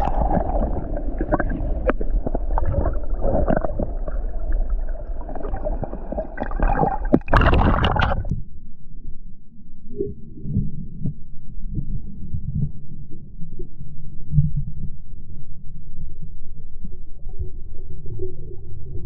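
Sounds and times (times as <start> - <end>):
water splashes: 0.0 - 8.3
water gurgling and sloshing: 0.0 - 8.4
dull muffled rumble: 0.0 - 19.0.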